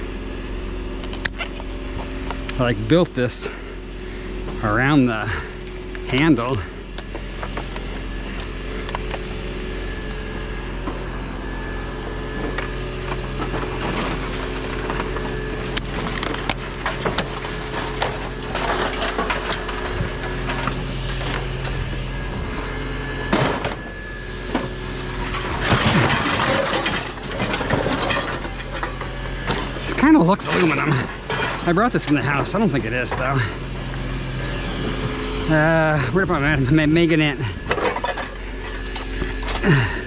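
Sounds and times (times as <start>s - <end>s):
idling vehicle engine hum: 0.0s - 40.0s
scrap metal clattering and scraping: 16.8s - 33.8s.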